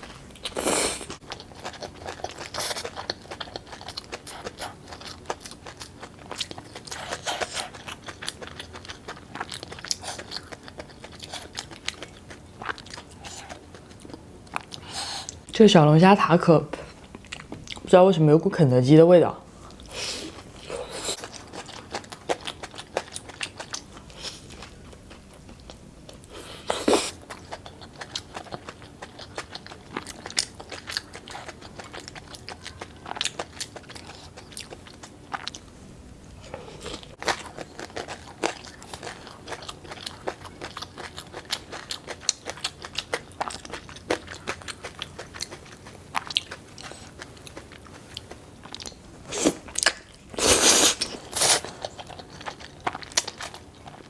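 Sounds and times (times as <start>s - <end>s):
crunchy chewing and biting: 36.4s - 54.0s.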